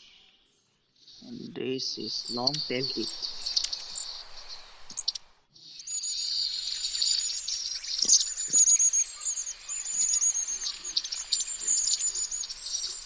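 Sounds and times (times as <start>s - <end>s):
bird calling high thin notes: 1.2s - 4.1s.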